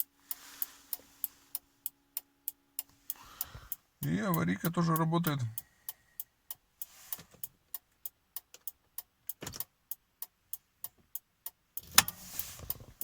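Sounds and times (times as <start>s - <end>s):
flasher relay clicking: 11.8s - 12.2s.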